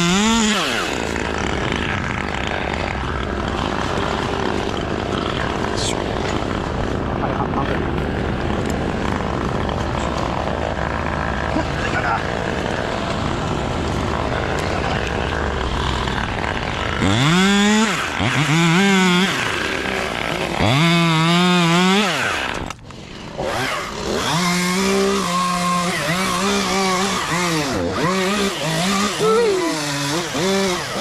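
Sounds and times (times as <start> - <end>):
chainsaw engine revving: 0.0 - 31.0.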